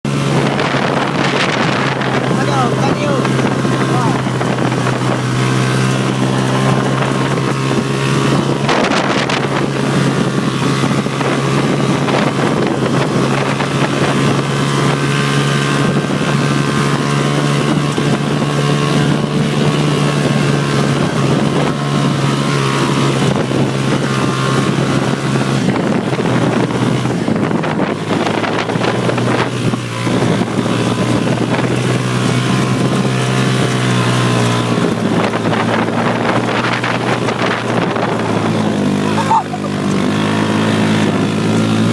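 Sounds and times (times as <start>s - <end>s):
buggy engine at high revs: 0.0s - 41.9s
wind noise on microphone: 0.1s - 41.9s.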